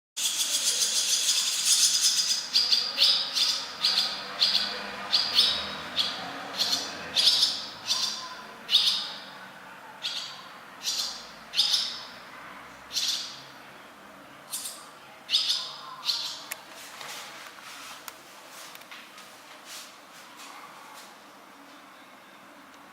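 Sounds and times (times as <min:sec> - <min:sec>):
small birds chirping: 0:00.2 - 0:12.2, 0:12.9 - 0:13.5, 0:14.5 - 0:16.6.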